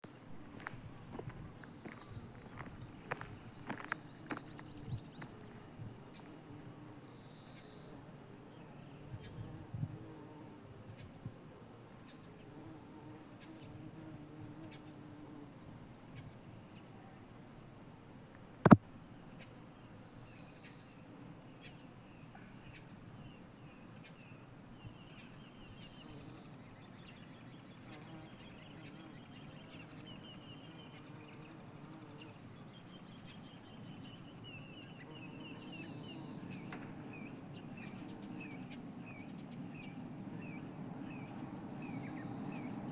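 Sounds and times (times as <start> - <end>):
small birds chirping: 0.1 - 11.3, 11.9 - 15.5, 18.6 - 42.9
sharp click: 18.6 - 18.9.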